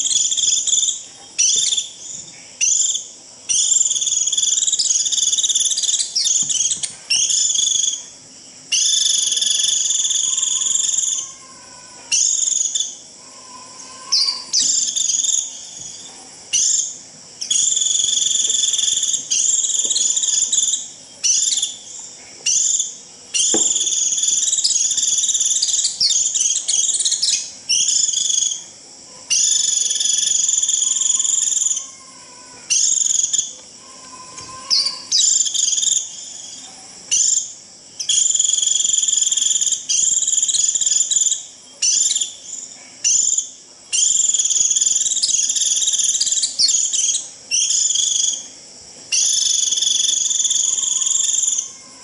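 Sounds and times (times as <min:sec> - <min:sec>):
bird giving shrill buzzy calls: 0:08.7 - 0:15.6.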